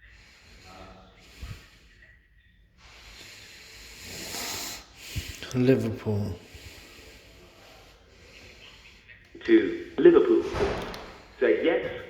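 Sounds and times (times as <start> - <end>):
breathing close to microphone: 0.0 - 12.0
hiss: 2.8 - 5.4.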